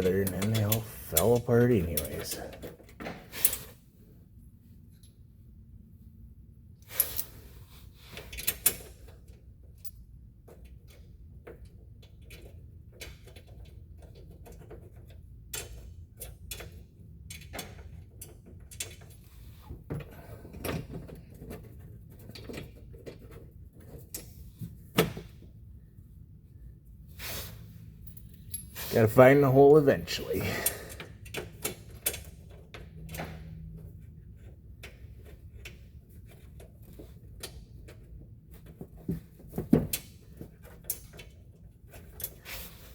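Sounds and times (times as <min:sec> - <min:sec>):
metal fasteners clicking and rattling: 0:00.0 - 0:03.8, 0:08.1 - 0:25.6, 0:28.0 - 0:42.7.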